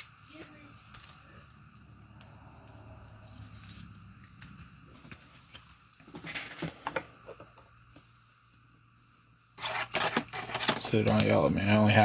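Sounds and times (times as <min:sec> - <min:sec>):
packaging rustling: 0:09.6 - 0:11.3.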